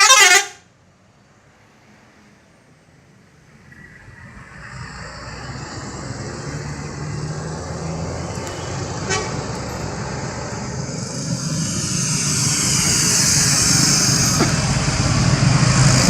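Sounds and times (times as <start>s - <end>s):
bus engine approaching: 0.0s - 16.0s.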